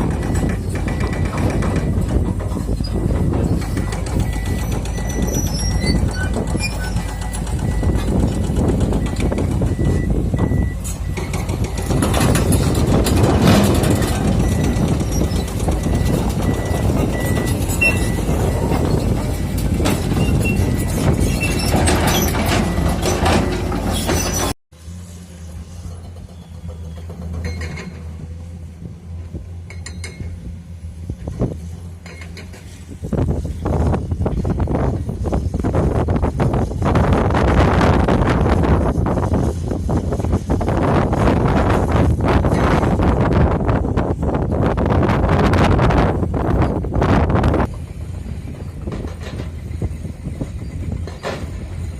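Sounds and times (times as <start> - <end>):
clanks of rock and metal: 0.0 - 9.8, 10.8 - 24.6
excavator engine rumbling: 0.0 - 51.9.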